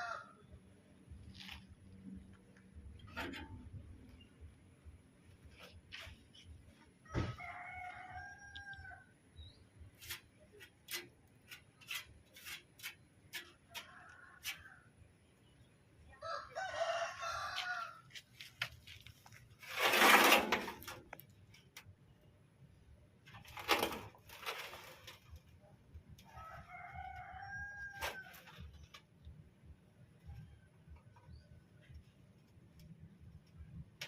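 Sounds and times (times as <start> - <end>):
rooster crowing: 7.1 - 9.0, 16.2 - 18.0, 26.3 - 28.4.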